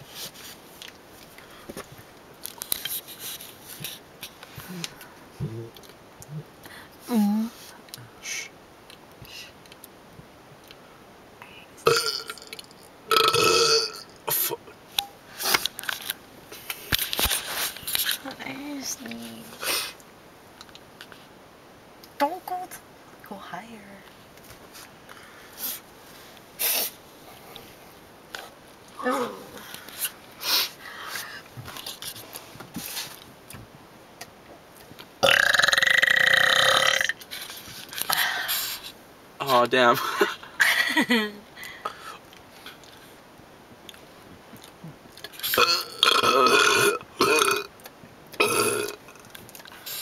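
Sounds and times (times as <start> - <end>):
person burping: 11.8 - 14.8, 35.2 - 37.2, 45.5 - 47.7, 48.4 - 49.1.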